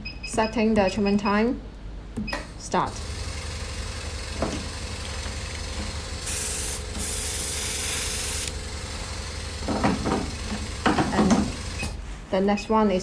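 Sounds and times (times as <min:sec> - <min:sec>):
machine low hum: 0:01.3 - 0:12.0
spray mist gun hissing: 0:06.2 - 0:08.6.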